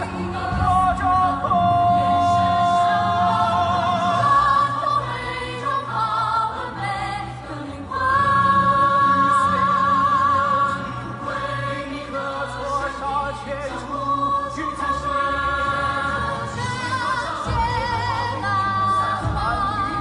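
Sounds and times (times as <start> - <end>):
musical accompaniment: 0.0 - 20.0
woman singing: 15.4 - 20.0.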